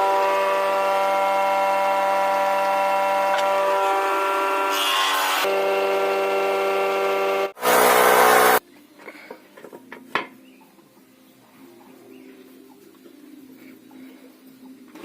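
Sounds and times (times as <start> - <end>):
power tool cutting wood: 0.0 - 8.6
power tool running: 0.0 - 8.6.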